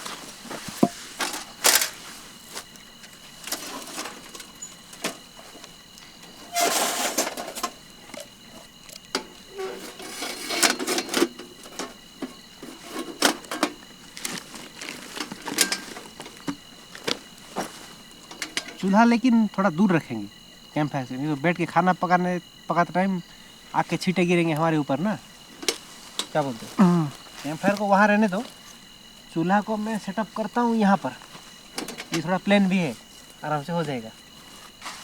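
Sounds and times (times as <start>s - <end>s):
rustling: 0.0s - 18.9s, 25.2s - 35.0s
crickets chirring: 0.0s - 35.0s
knocks and clatters: 6.3s - 18.8s, 31.7s - 32.2s.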